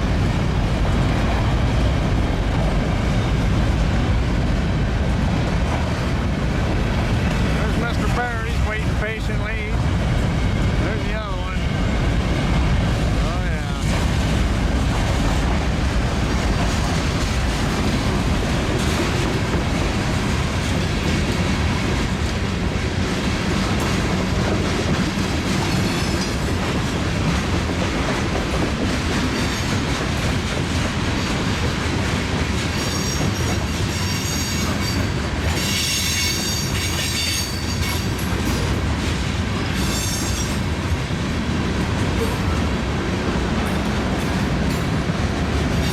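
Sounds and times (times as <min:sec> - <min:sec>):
freight train cars rolling: 0:00.0 - 0:45.9
train wheel squeal: 0:25.6 - 0:26.4, 0:32.7 - 0:38.7, 0:39.7 - 0:40.6.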